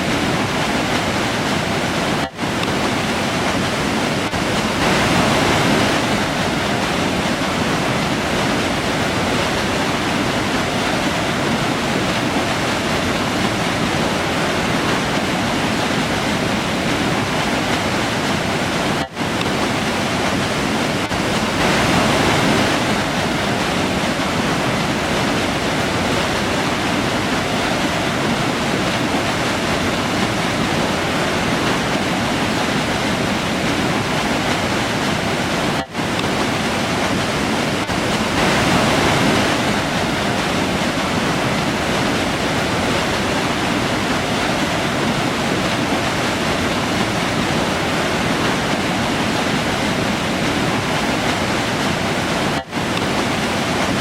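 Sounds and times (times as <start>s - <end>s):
river water rushing over rocks: 0.0s - 54.0s.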